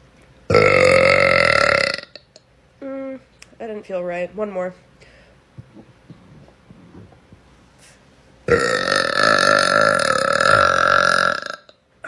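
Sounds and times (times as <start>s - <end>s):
woman burping: 0.5s - 2.3s, 8.5s - 11.8s.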